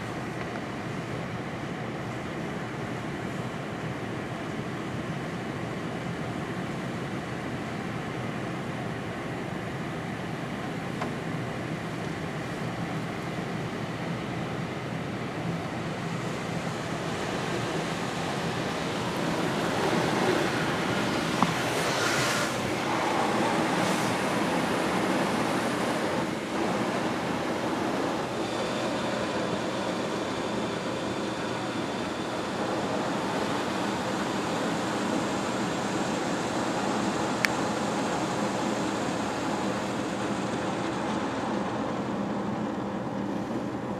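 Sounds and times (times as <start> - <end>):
high steady whine: 0.0 - 43.9
water spray hitting car: 16.1 - 26.4.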